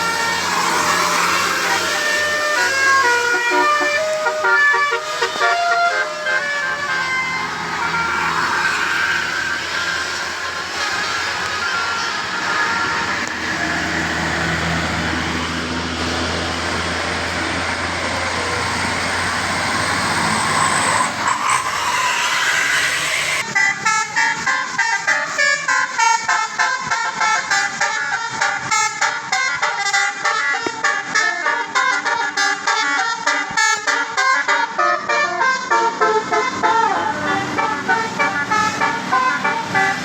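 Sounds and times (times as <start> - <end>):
bus engine: 0.0 - 40.0
road noise: 0.0 - 40.0
musical air horn tune: 1.5 - 8.4, 23.4 - 40.0.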